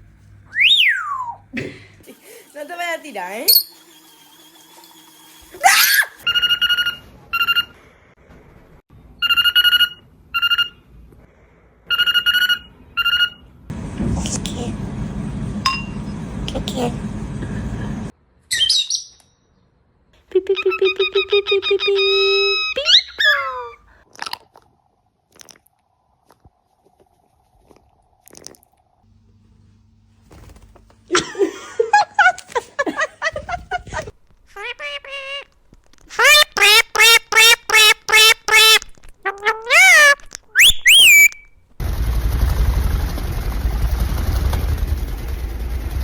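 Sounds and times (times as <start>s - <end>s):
parrot squawk: 5.6s - 7.8s, 9.2s - 10.8s, 11.9s - 13.4s, 20.6s - 23.8s, 34.6s - 35.5s, 36.1s - 41.4s
short crunches and clicks: 35.4s - 36.2s.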